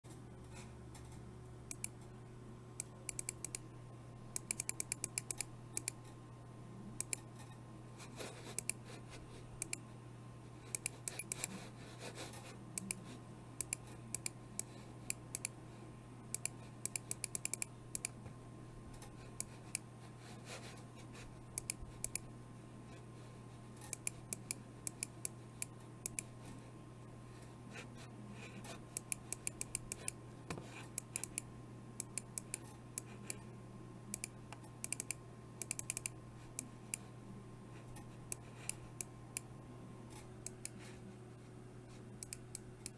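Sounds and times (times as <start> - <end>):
low electrical hum: 0.1 - 42.9
computer mouse buttons clicking: 1.0 - 2.1, 2.8 - 3.6, 4.4 - 6.1, 7.0 - 7.6, 8.5 - 8.8, 9.6 - 9.8, 10.6 - 11.6, 12.8 - 13.0, 13.6 - 15.6, 16.3 - 18.2, 21.5 - 22.3, 23.8 - 26.3, 27.7 - 33.5, 34.1 - 37.1, 37.9 - 39.5, 40.1 - 40.9, 42.1 - 42.9.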